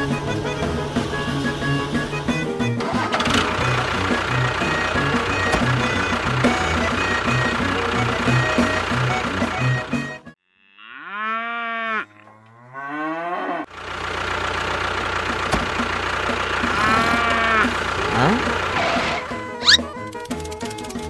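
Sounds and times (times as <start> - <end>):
music: 0.0 - 10.4, 17.8 - 21.0
cattle mooing: 10.6 - 13.7, 16.6 - 19.8.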